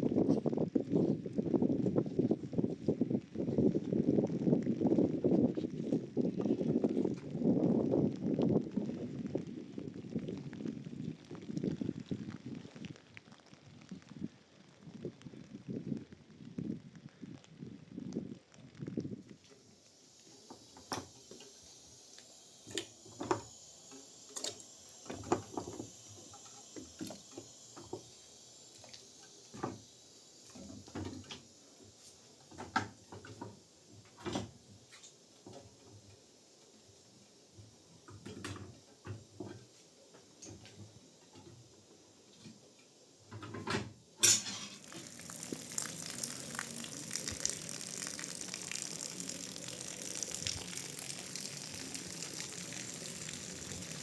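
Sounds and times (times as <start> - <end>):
food sizzling: 19.2 - 54.0
pots and utensils clinking: 44.2 - 45.0.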